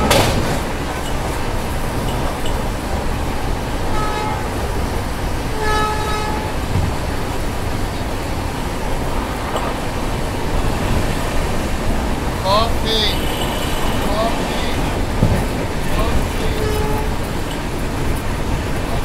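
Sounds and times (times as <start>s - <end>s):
train horn toots: 0.0s - 0.4s, 3.8s - 6.7s, 13.0s - 17.6s
passenger train rumbling: 0.0s - 19.0s.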